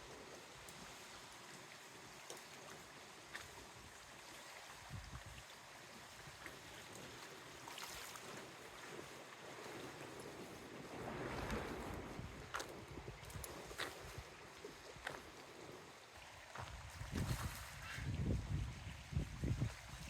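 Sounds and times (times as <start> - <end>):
faint wind: 0.0 - 20.0
wind buffeting microphone: 8.2 - 15.8, 16.4 - 20.0.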